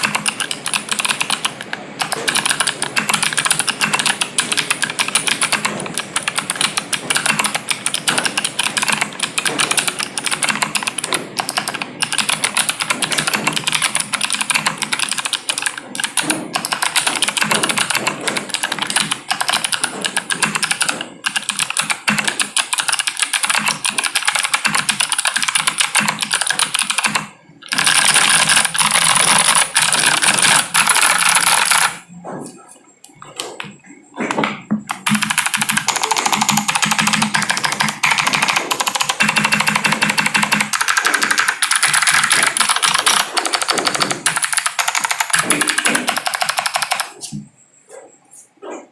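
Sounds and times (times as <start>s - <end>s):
fast typing on mechanical keyboard: 0.0s - 47.4s.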